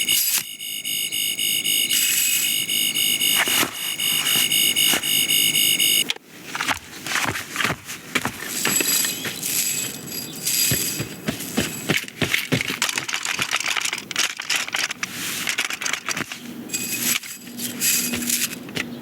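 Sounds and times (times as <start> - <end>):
toy pulsing electronic tone: 0.0 - 6.1.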